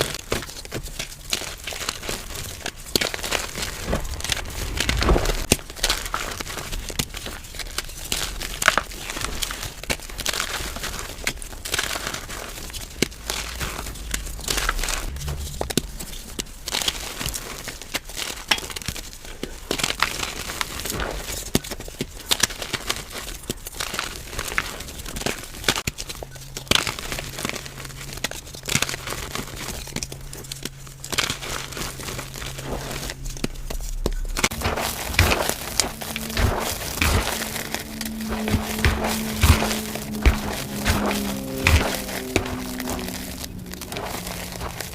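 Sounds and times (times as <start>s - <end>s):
powder blocks crunching: 26.6s - 44.9s.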